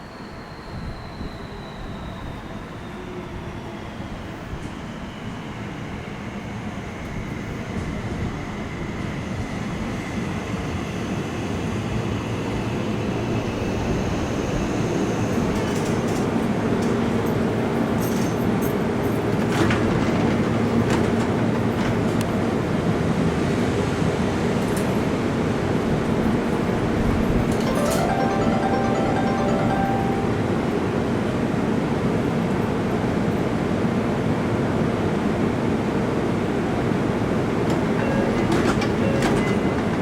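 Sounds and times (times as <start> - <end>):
electric train approaching: 27.6 - 31.2.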